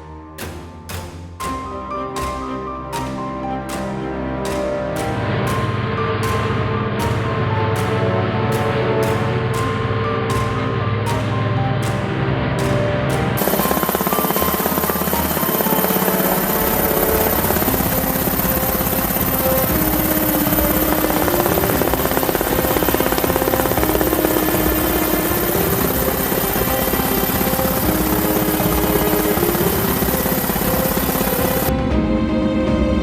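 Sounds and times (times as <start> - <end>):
background music: 0.0 - 33.0
helicopter rotor chop: 13.4 - 31.7.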